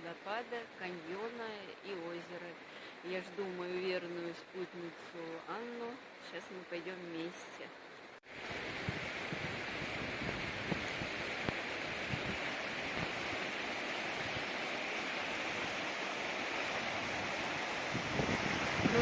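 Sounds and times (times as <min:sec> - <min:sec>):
flowing water rushing: 0:07.7 - 0:19.0.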